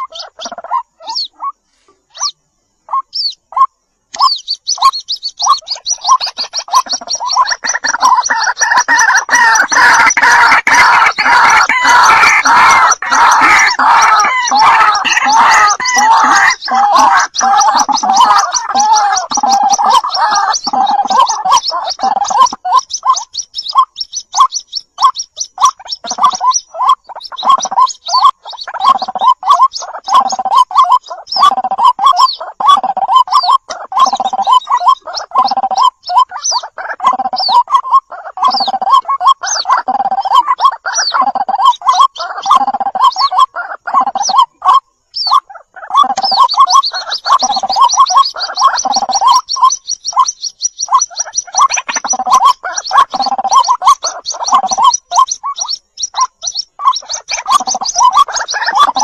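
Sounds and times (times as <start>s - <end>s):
waterhen harsh gargling croaks: 6.5s - 22.6s.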